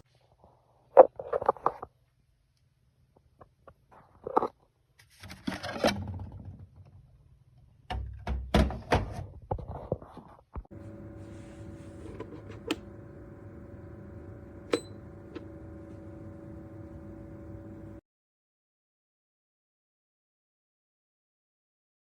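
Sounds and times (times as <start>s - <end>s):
fan humming: 10.7s - 18.0s
switch click: 10.8s - 18.0s.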